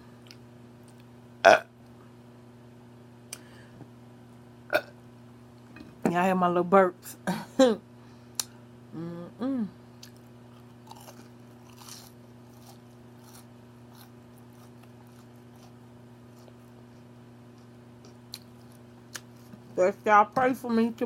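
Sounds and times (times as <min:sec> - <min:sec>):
steady low hum: 0:00.0 - 0:21.0
small burp: 0:01.4 - 0:01.7, 0:04.7 - 0:05.0
quiet chewing with crunches: 0:10.0 - 0:19.7.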